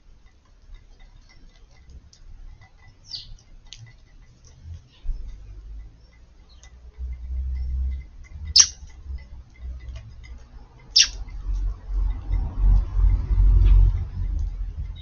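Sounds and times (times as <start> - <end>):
faint ticks: 0.0 - 15.0
sparrows chirping: 2.4 - 15.0
low rumble: 6.9 - 15.0.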